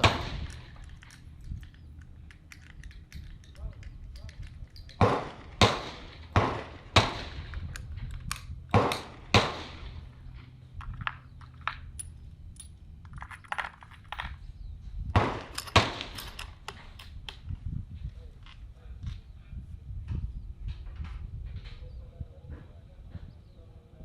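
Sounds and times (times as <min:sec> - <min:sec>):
rifle gunshots: 0:00.0 - 0:00.8, 0:05.0 - 0:07.6, 0:08.7 - 0:10.1, 0:15.2 - 0:16.3.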